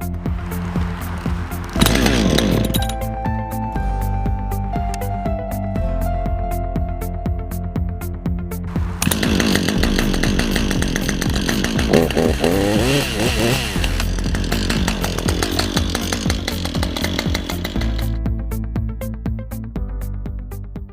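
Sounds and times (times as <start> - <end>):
background music: 0.0 - 20.9
chainsaw engine revving: 0.6 - 3.1, 8.8 - 18.2.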